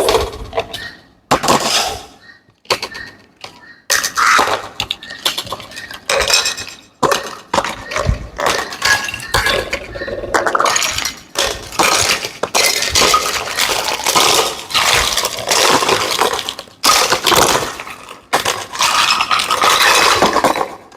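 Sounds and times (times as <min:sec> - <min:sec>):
plastic toy pieces clicking: 0:04.8 - 0:20.9.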